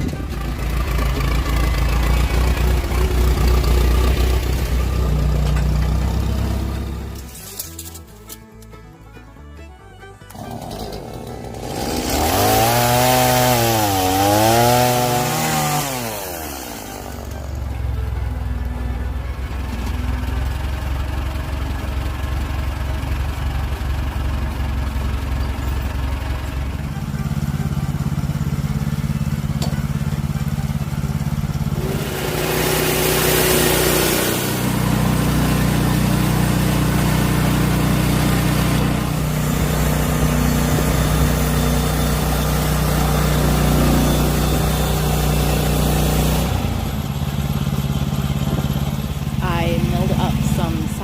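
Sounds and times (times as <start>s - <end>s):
chainsaw revving and cutting: 0.0s - 8.0s, 10.3s - 17.8s, 26.2s - 51.0s
engine idling: 0.0s - 13.5s, 14.3s - 51.0s.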